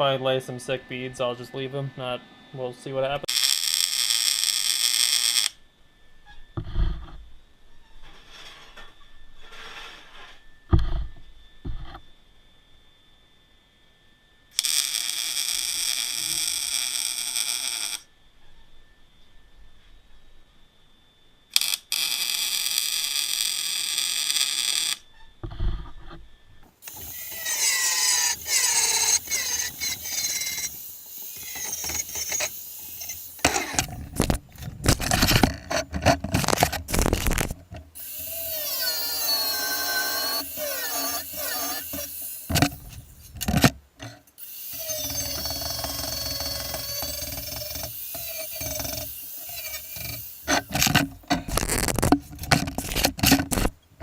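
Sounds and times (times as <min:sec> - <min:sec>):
angle grinder grinding steel: 0:26.8 - 0:53.7.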